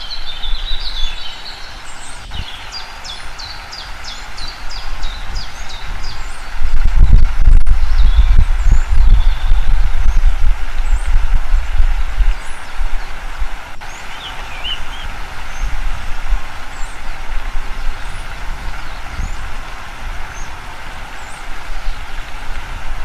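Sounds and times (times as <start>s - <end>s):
small birds chirping: 0.0s - 23.0s
steady hiss: 0.0s - 23.0s
low rumble: 5.0s - 13.8s.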